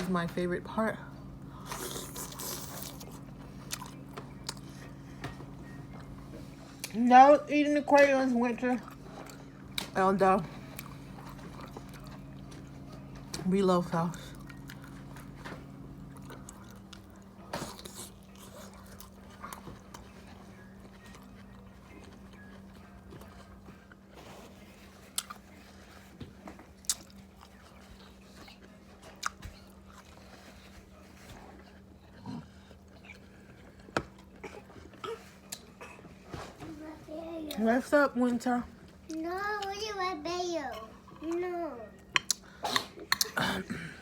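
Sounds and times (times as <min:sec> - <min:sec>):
faint steady hum: 0:00.0 - 0:44.0
person chewing food: 0:01.4 - 0:07.0, 0:08.8 - 0:09.9, 0:10.5 - 0:13.4, 0:14.2 - 0:36.2, 0:40.8 - 0:44.0.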